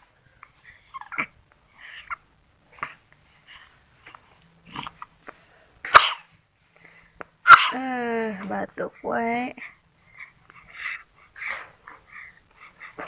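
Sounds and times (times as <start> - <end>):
baby coughing: 5.9 - 6.3, 7.4 - 7.8
baby's breathy huffs: 9.6 - 13.0.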